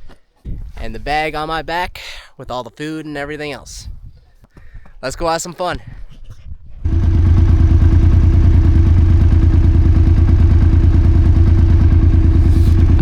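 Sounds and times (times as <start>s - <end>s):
snowmobile engine running: 6.8s - 13.0s.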